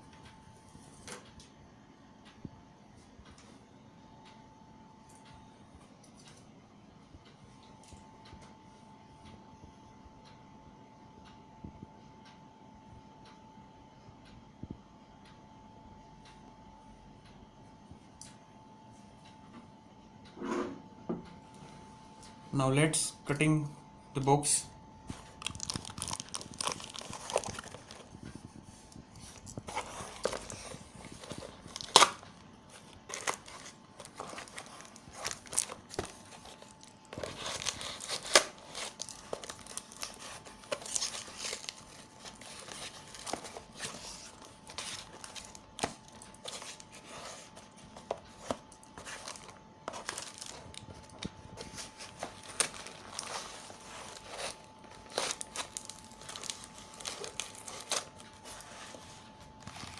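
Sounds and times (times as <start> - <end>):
packaging tearing and crinkling: 25.2 - 28.1, 29.3 - 59.9.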